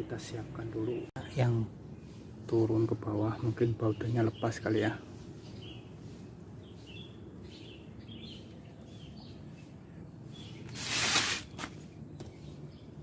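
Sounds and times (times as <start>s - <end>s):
birds chirping: 0.0s - 13.0s
short hiss: 10.7s - 11.6s.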